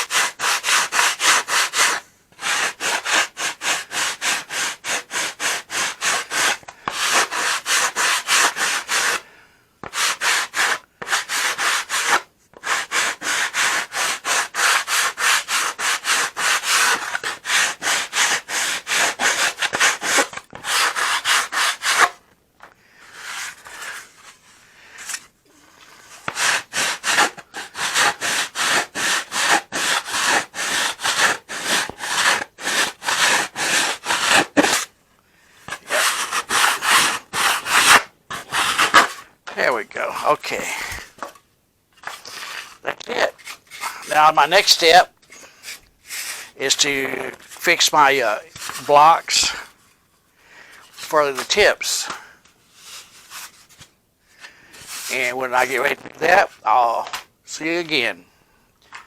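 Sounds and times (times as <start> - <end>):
sandpaper sanding wood: 0.0 - 9.2, 9.8 - 22.2, 23.1 - 24.2, 25.9 - 34.9, 35.7 - 40.8, 43.7 - 45.0, 47.7 - 49.7.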